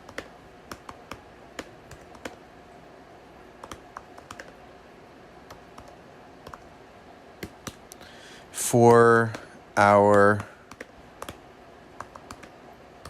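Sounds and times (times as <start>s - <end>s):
computer keyboard typing: 0.0s - 2.4s, 3.6s - 4.6s, 5.5s - 6.7s, 8.9s - 11.4s, 12.0s - 12.6s.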